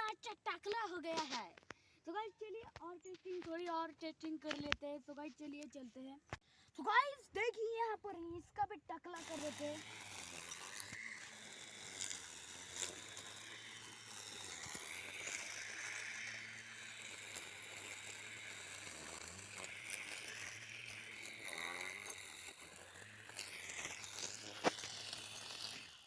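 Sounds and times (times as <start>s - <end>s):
lawn mower motor whirring: 9.1s - 26.0s.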